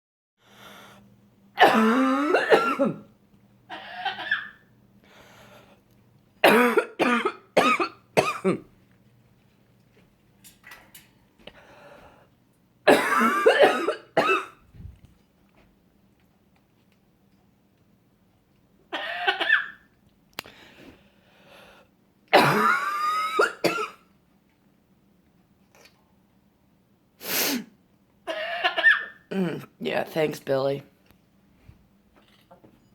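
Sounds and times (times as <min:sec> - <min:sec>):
parrot imitating coughing: 0:03.7 - 0:04.7, 0:18.9 - 0:19.8, 0:28.2 - 0:29.6.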